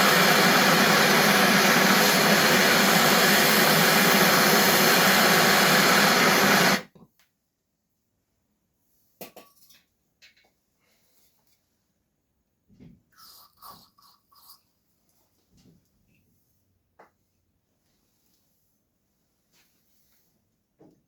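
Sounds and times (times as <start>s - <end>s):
power tool motor running: 0.0s - 6.8s.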